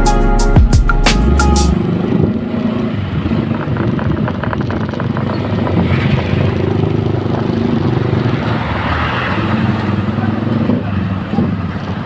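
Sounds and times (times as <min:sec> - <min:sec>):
vehicle engine running: 0:01.1 - 0:08.8.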